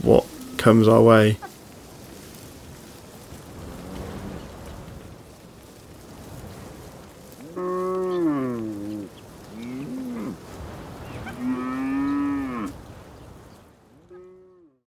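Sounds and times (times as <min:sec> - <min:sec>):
cattle mooing: 0:03.7 - 0:04.6, 0:07.4 - 0:10.5, 0:11.2 - 0:12.8, 0:14.1 - 0:14.8.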